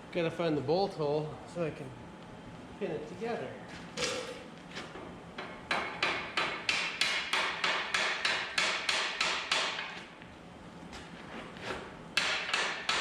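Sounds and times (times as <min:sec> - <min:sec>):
hammer striking steel: 0:05.7 - 0:10.0, 0:12.2 - 0:13.0.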